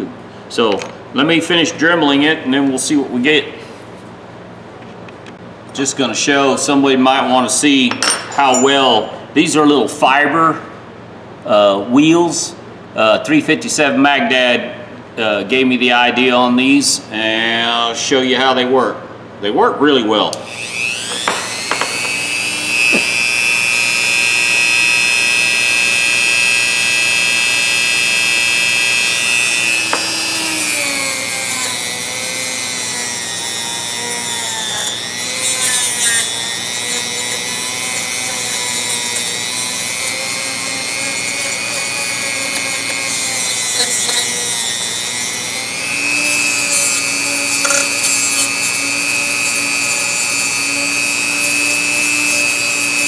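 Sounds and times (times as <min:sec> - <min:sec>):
rotary tool grinding rust: 0:20.5 - 0:26.1, 0:28.0 - 0:53.0.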